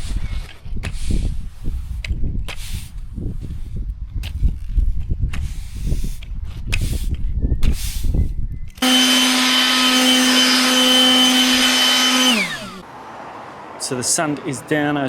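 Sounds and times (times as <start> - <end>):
low rumbling scuffing noise: 0.0 - 8.2
electric motor whining: 8.8 - 12.8.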